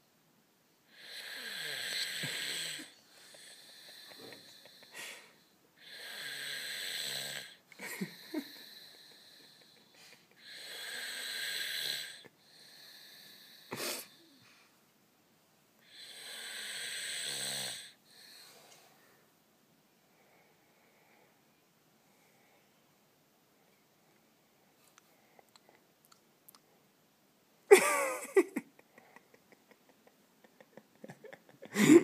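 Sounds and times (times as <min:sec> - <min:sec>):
person snoring: 0:00.9 - 0:09.8, 0:10.4 - 0:14.4, 0:15.8 - 0:18.5.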